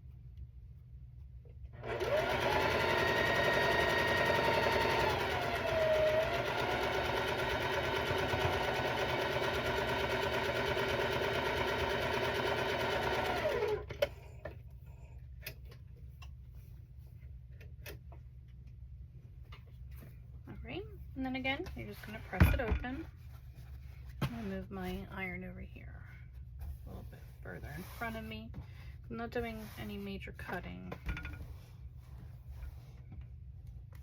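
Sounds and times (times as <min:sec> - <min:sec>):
electric sewing machine stitching: 0:01.8 - 0:14.1.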